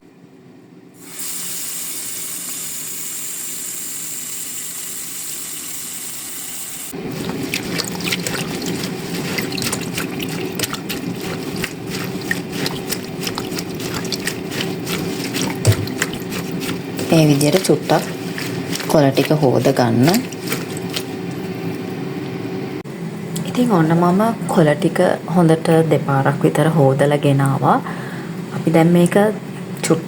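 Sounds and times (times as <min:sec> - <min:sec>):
tap water running: 0:01.0 - 0:22.4
water splashing and sloshing: 0:06.9 - 0:22.4.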